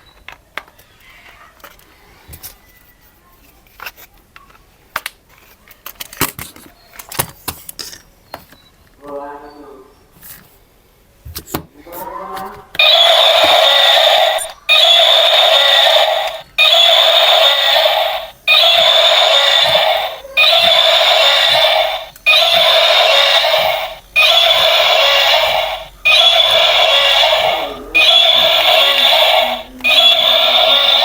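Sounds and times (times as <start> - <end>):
loud electronic buzz: 12.8 - 31.0.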